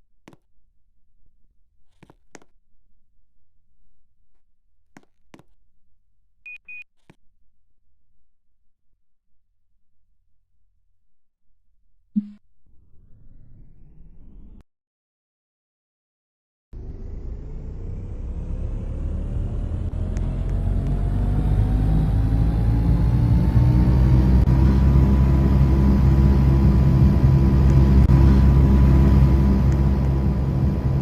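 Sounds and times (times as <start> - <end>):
air conditioner hum and whine: 23.9 - 31.0.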